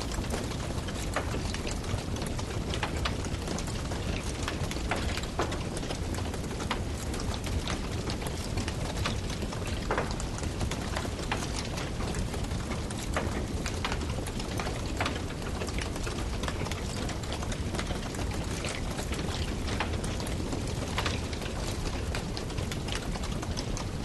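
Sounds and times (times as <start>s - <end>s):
firewood burning: 0.0s - 8.4s
fire crackles and pops: 0.0s - 24.0s.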